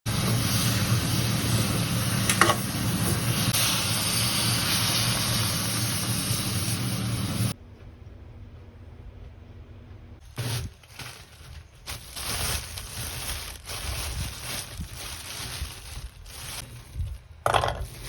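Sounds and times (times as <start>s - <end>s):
food sizzling in hot oil: 0.1s - 7.6s.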